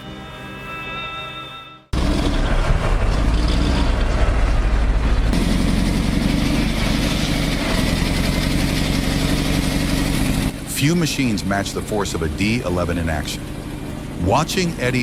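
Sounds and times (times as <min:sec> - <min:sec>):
background music: 0:00.0 - 0:01.9
bulldozer diesel engine: 0:01.9 - 0:15.0.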